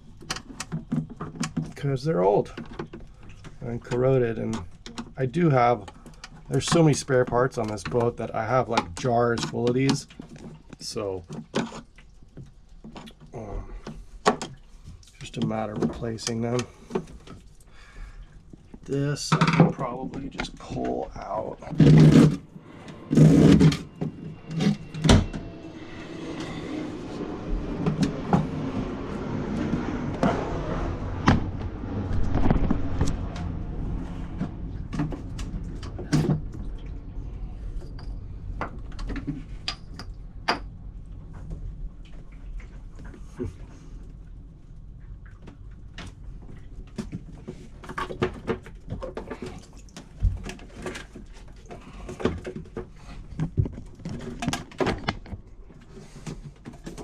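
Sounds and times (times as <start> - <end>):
knocks and clunks of hoses: 0.0 - 37.0, 45.2 - 57.0
rubbing and scraping: 18.4 - 36.3.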